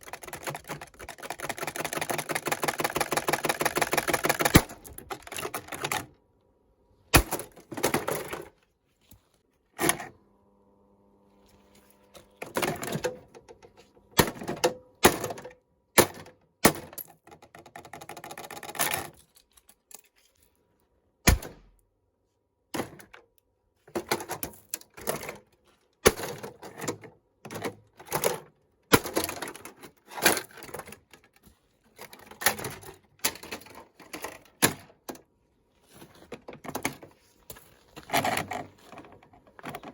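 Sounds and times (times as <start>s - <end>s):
fan being broken apart: 28.9s - 31.3s.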